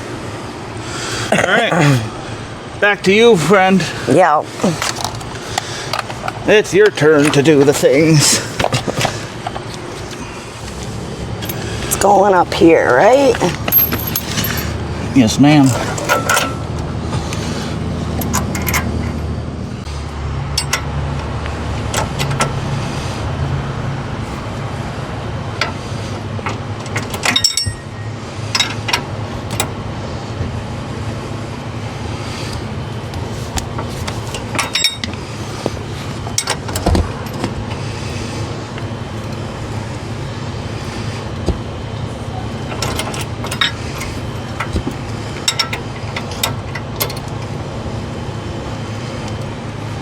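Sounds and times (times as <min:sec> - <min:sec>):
steady low hum: 0:00.0 - 0:50.0
metallic clicks and clinks: 0:26.4 - 0:27.9.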